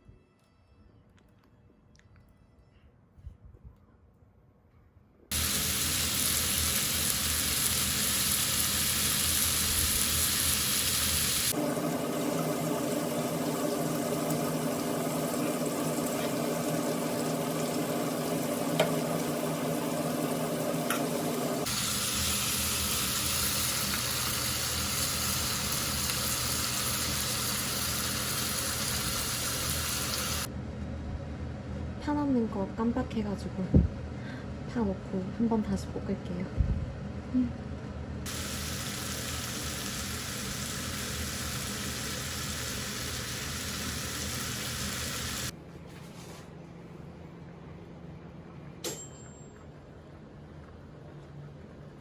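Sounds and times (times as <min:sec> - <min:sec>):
food sizzling in a frying pan: 0:05.3 - 0:30.5, 0:38.3 - 0:45.5.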